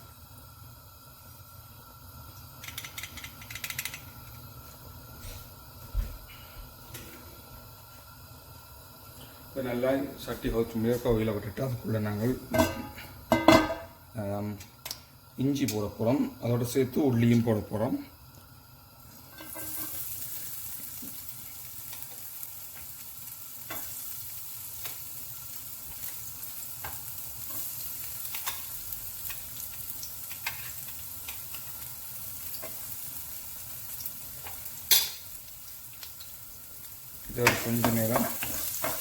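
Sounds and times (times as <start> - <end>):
garlic sizzling in hot oil: 0.0 - 39.0
utensil clicking in pan: 2.6 - 4.3.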